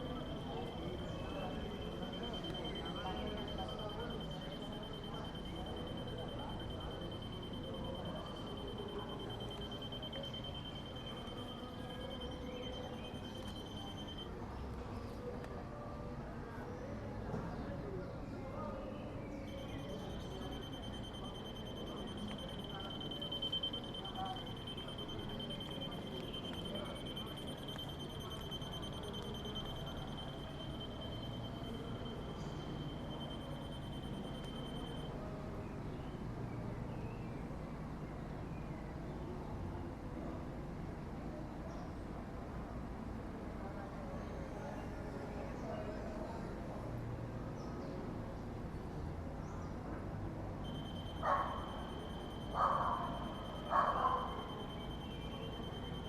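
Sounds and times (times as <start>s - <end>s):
high-pitched pulsing ringing tone: 0.0s - 14.7s, 19.3s - 35.3s, 50.6s - 56.0s
low city rumble: 0.0s - 56.0s
dog barking: 51.2s - 51.9s, 52.5s - 54.5s.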